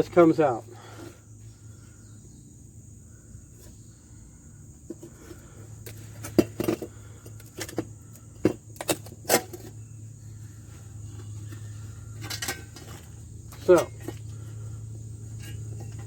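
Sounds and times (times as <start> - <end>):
high insect buzz: 0.0 - 16.0
metal parts clinking: 11.5 - 14.2.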